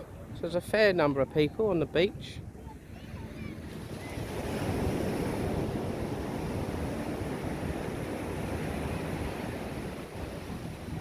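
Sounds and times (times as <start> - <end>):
wind buffeting microphone: 0.0 - 11.0
surf washing onto beach: 3.2 - 11.0.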